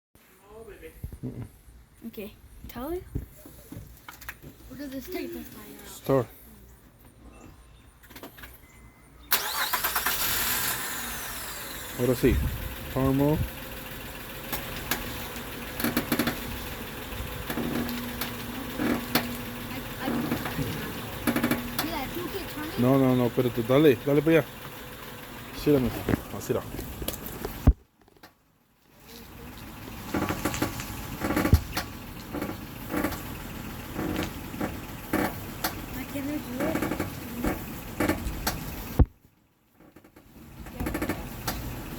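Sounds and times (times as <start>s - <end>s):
car engine running: 9.3s - 27.8s, 28.8s - 41.9s
creaking from front end: 14.3s - 39.0s, 39.7s - 41.9s.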